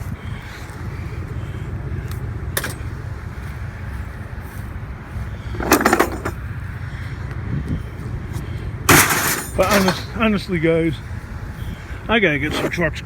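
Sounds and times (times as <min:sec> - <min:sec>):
road rumble inside vehicle: 0:00.0 - 0:13.0
loud rattle: 0:05.5 - 0:06.4, 0:08.9 - 0:10.2.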